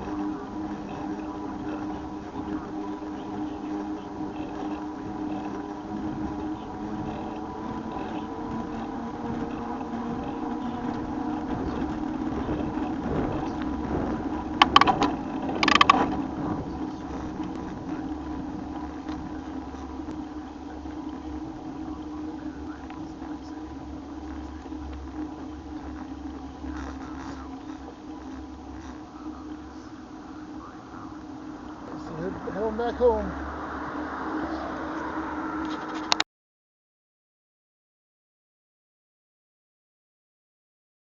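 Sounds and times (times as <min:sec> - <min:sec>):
bike running hum: 0:00.0 - 0:36.2
sharp clattering bursts: 0:07.0 - 0:19.3.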